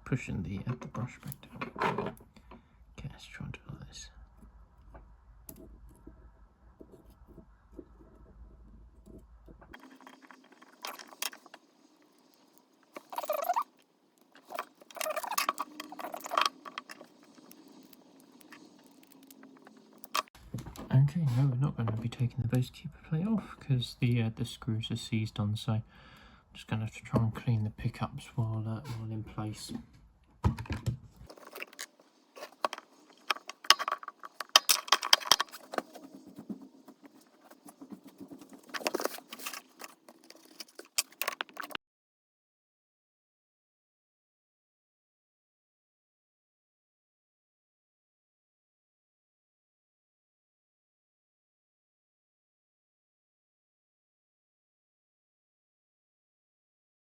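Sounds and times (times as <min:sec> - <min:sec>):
small tools scratching and clicking on metal: 0:09.8 - 0:20.3, 0:31.3 - 0:41.8.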